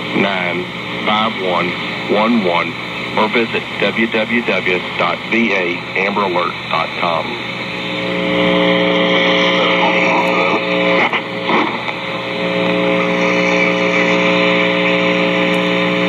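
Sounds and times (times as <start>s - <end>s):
buzzing electrical hum: 0.0s - 16.0s
radio static hiss: 0.0s - 16.0s.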